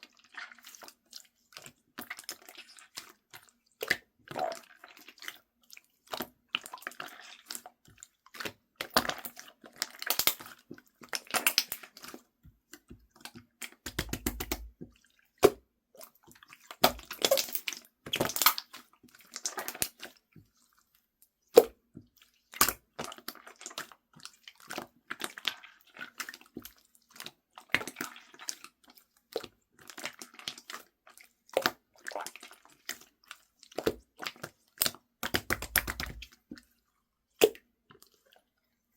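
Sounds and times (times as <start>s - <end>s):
wet squishing with clicks: 0.0s - 38.9s.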